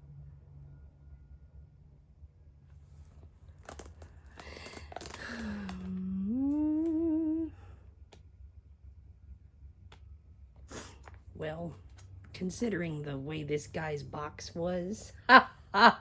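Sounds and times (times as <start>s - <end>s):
hummed voice-like tone: 5.2s - 7.8s.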